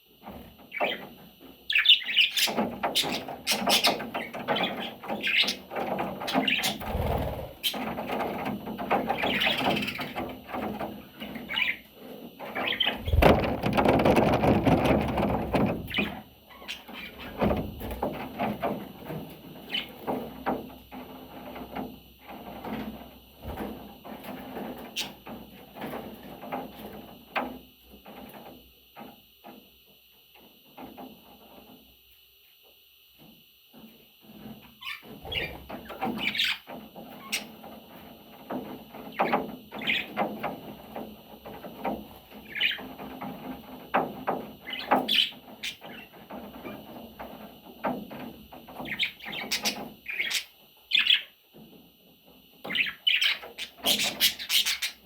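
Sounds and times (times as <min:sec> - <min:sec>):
budgerigar chattering and squeaking: 0:52.8 - 0:55.0.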